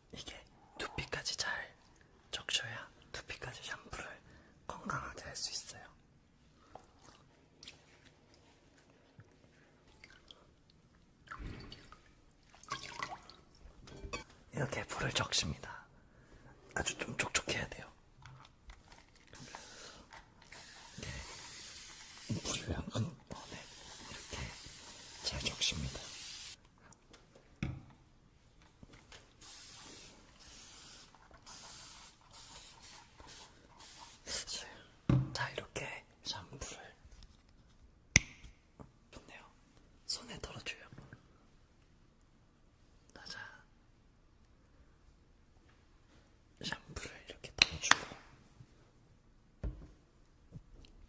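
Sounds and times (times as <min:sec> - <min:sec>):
wet squishes of hands in hair: 0:06.7 - 0:13.6
water spraying onto hair: 0:19.4 - 0:22.6, 0:23.4 - 0:26.6, 0:29.4 - 0:34.3.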